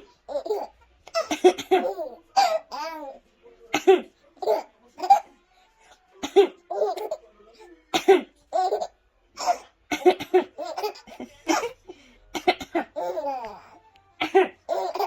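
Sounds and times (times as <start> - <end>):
baby laughing: 0.2 - 3.2, 4.4 - 5.3, 6.4 - 7.3, 8.5 - 11.8, 12.4 - 15.0
woman coughing: 1.2 - 2.8, 3.7 - 4.1, 6.2 - 7.1, 7.9 - 8.4, 9.4 - 11.8, 12.4 - 13.2, 14.2 - 15.0.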